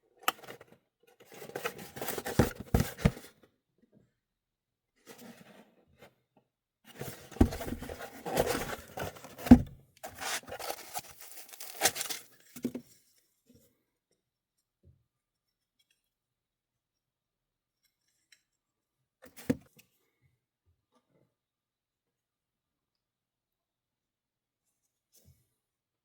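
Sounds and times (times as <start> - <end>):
handling noises rubbing and scraping: 1.4 - 3.3, 6.9 - 12.5.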